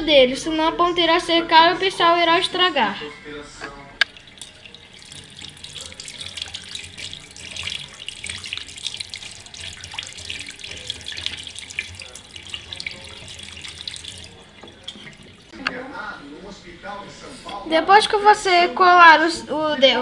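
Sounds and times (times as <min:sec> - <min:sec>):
tap water running and splashing: 0:04.0 - 0:15.6.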